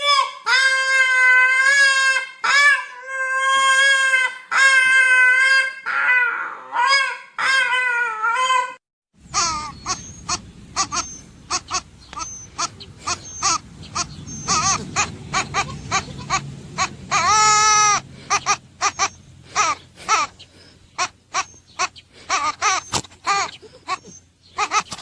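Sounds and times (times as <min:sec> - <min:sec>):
animal high-pitched cries: 0:00.0 - 0:25.0.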